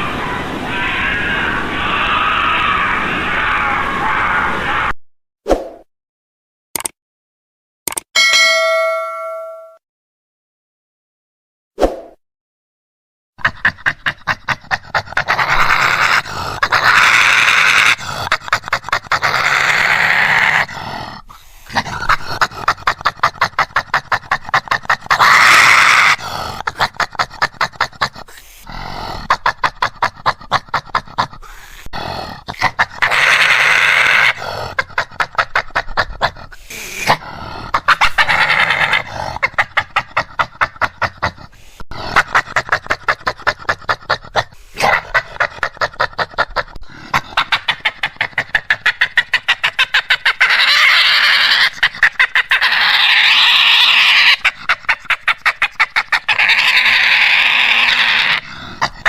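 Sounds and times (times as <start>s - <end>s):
badger chattering: 32.5s - 59.0s.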